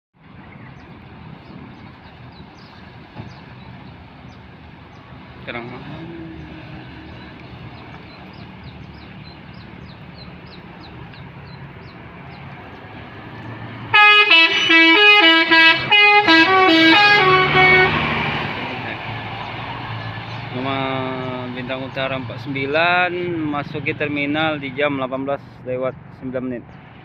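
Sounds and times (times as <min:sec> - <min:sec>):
vehicle rumble: 0:00.2 - 0:27.0
multi-note bus horn melody: 0:13.9 - 0:18.6.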